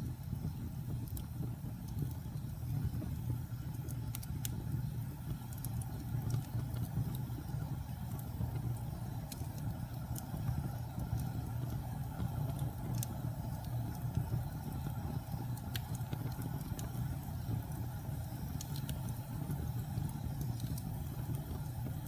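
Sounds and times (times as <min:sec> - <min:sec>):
fire crackles: 0:00.0 - 0:22.0
wood fire rumbling: 0:00.0 - 0:22.0.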